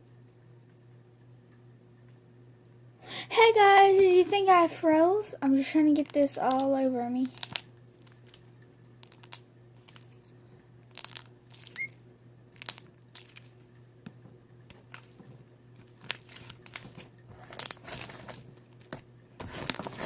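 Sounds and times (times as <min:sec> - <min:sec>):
steady low hum: 0:00.0 - 0:20.0
slime crackling and squishing: 0:05.6 - 0:08.4, 0:09.0 - 0:10.2, 0:10.8 - 0:12.0, 0:12.6 - 0:13.6, 0:15.8 - 0:20.0.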